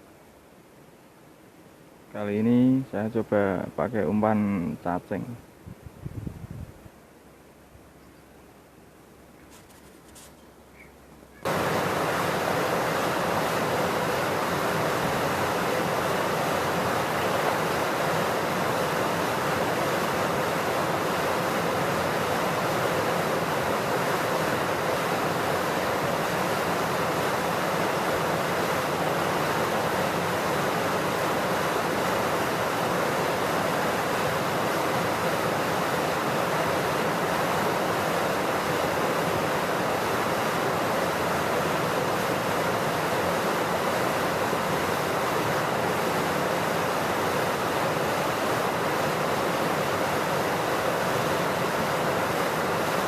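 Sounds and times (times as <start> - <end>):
water rushing through sluice gate: 11.4 - 53.0.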